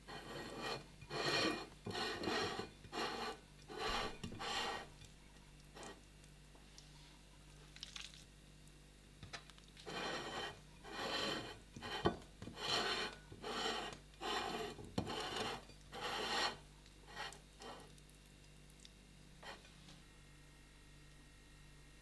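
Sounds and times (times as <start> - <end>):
food grated on a grater: 0.0 - 4.9, 9.8 - 17.9.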